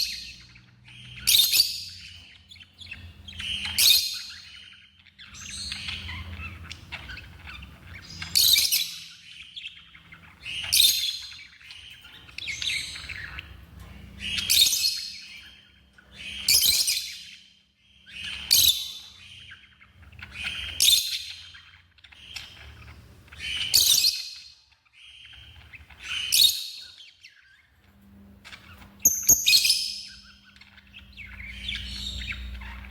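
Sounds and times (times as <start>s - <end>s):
lovebirds chirping shrilly: 0.0s - 32.9s.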